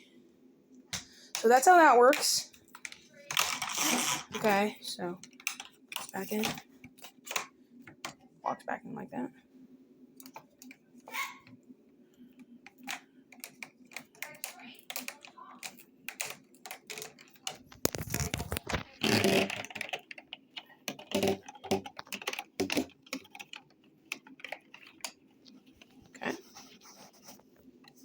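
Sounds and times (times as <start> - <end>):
plastic parts clicking and knocking: 0.9 - 8.3, 10.2 - 10.8, 12.3 - 26.2
plastic clatter: 5.2 - 8.2, 12.7 - 26.2.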